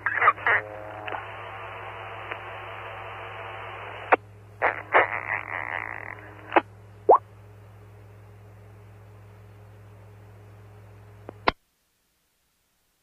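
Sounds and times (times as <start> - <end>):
radio carrier hiss: 0.0 - 6.7
radio noise bursts and clicks: 0.0 - 7.2
faint hum: 0.0 - 13.0
radio click: 1.0 - 1.3.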